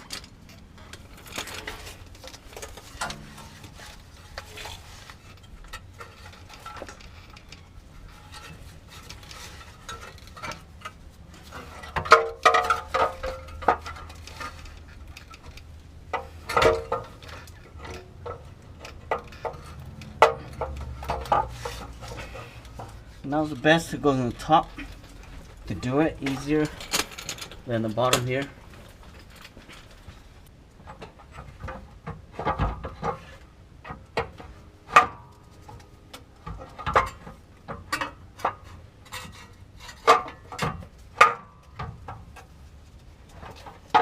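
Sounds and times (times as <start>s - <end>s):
metal parts clinking: 0.0s - 30.1s
metal parts clattering: 0.0s - 30.3s.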